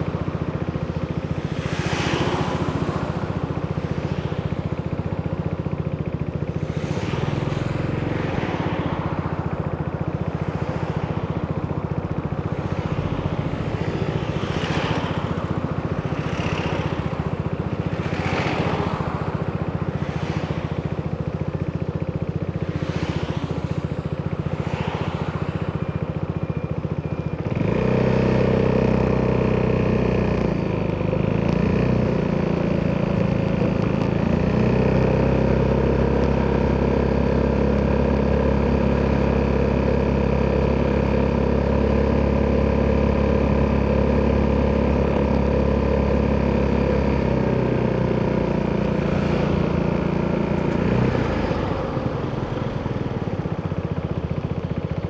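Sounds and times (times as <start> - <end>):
scooter engine revving: 11.4 - 55.0.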